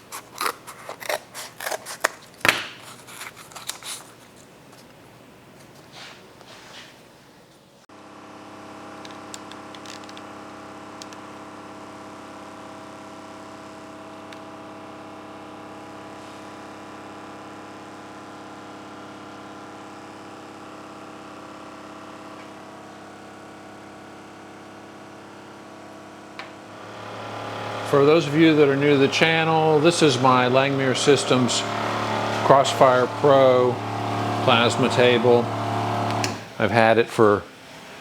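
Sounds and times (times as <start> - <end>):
electric motor humming: 26.4 - 37.0.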